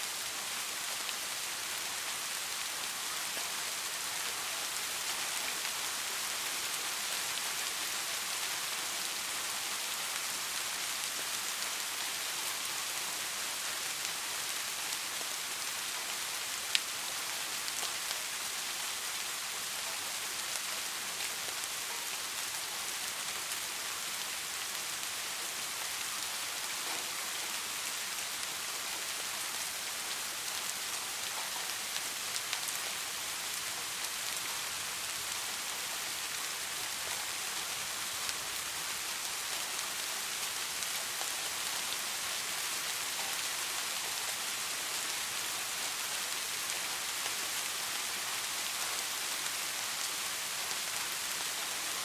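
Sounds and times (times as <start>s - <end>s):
steady rain hiss: 0.0s - 52.0s.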